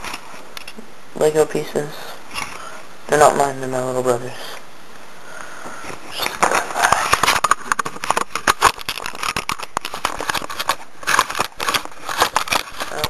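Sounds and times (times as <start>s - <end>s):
plastic bricks clattering: 6.1s - 13.0s.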